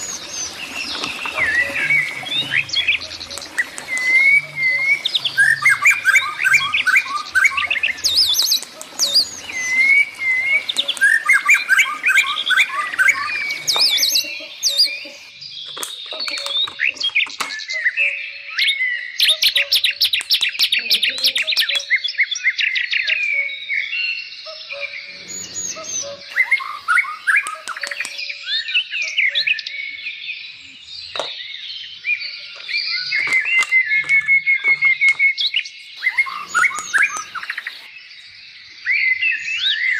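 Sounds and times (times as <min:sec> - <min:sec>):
small birds chirping: 0:00.0 - 0:39.9
sharp clicks: 0:27.4 - 0:28.2, 0:36.5 - 0:37.8.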